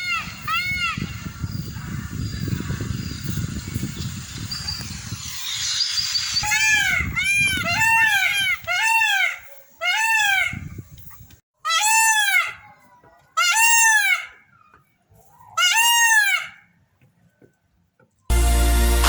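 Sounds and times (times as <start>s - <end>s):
peacock wailing calls: 4.2s - 10.6s, 11.7s - 14.4s, 15.4s - 16.6s.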